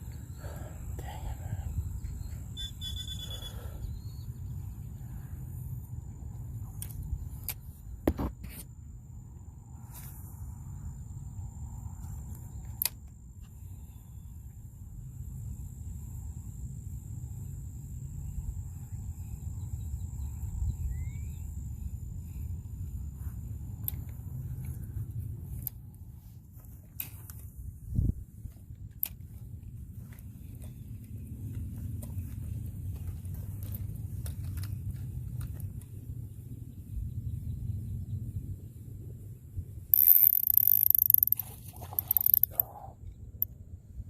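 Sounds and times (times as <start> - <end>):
wind buffeting microphone: 27.6 - 31.1
sharp clicks: 39.9 - 42.7.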